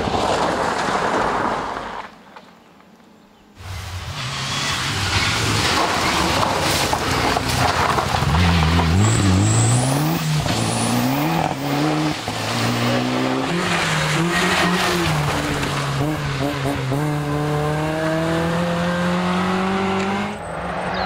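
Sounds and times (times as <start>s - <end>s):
tyre and road noise: 0.0s - 21.0s
rally car engine revving: 3.8s - 20.4s.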